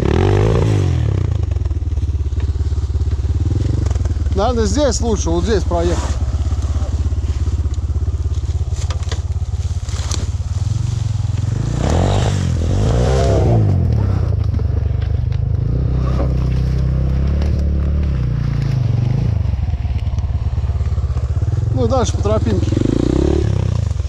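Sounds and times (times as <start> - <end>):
motorbike engine running: 0.0 - 24.0
clicks and crackles: 1.5 - 4.5, 6.4 - 10.6, 13.1 - 21.5.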